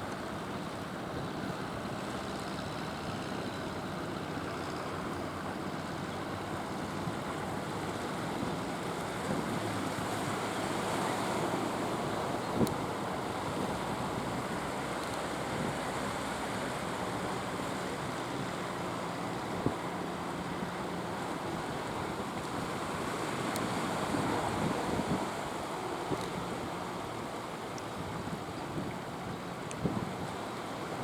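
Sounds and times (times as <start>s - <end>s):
faint boat engine running: 0.0s - 31.0s
sea surf rushing: 7.1s - 31.0s.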